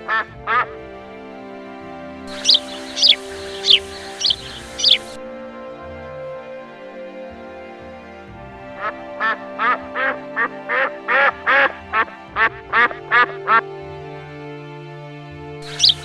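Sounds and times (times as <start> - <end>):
background music: 0.0 - 16.0
duck quacking: 15.7 - 16.0.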